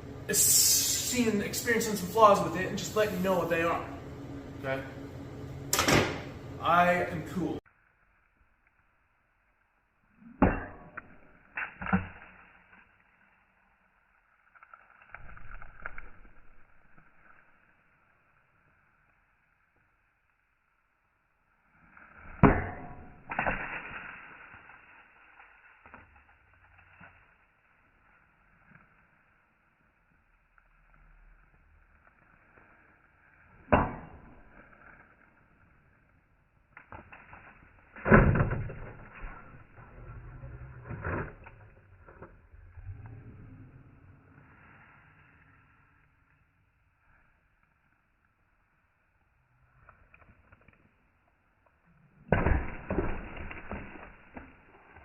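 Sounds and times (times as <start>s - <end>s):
low rumbling noise: 38.5s - 46.0s.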